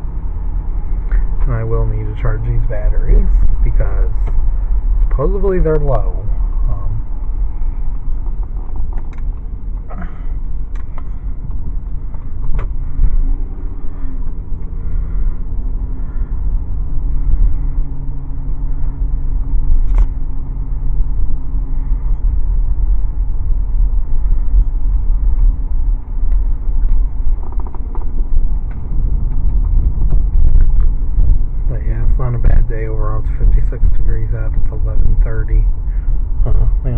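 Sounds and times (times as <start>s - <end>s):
road and engine rumble: 0.0s - 36.9s
sharp click: 19.8s - 20.2s.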